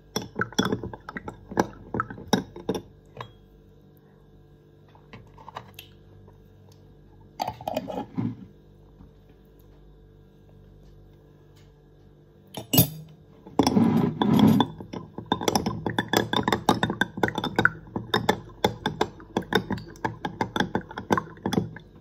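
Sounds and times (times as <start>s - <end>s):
spoon clinking against container: 12.6s - 13.7s.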